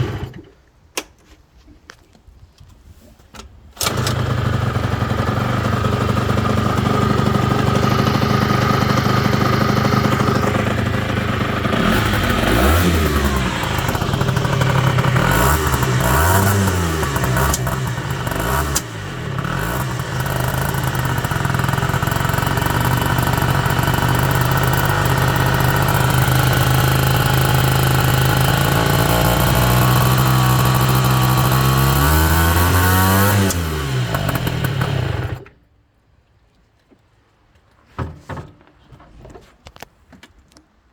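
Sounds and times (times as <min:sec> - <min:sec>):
scooter engine revving: 0:00.0 - 0:00.5, 0:03.8 - 0:35.5.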